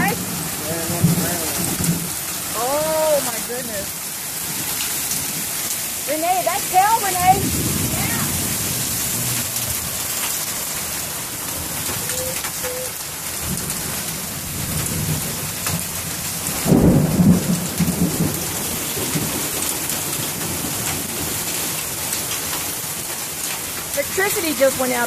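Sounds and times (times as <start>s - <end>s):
heavy rain pouring: 0.0s - 25.0s.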